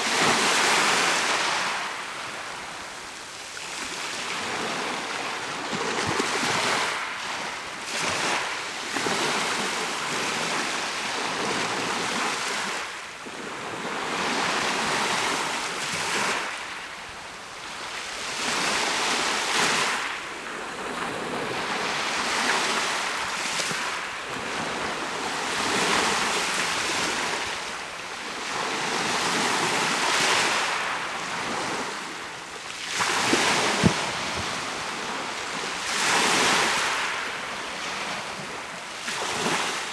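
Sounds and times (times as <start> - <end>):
sea waves breaking on shore: 17.6 - 39.9
wind buffeting microphone: 33.0 - 36.6.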